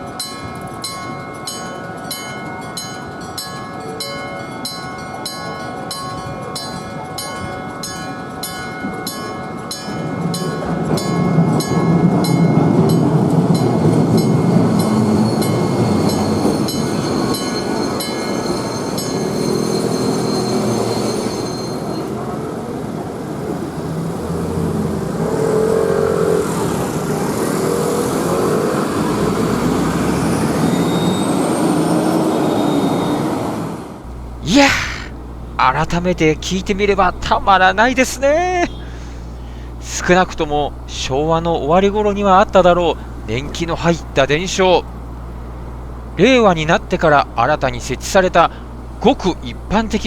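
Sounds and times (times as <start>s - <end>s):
electric crossing bell ringing: 0.2s - 22.2s
street noise: 34.1s - 50.0s
electronic crossing alarm: 35.2s - 50.0s.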